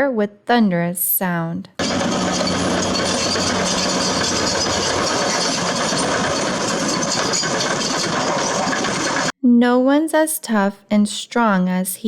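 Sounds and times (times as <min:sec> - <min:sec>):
heavy engine running: 0:01.8 - 0:09.3.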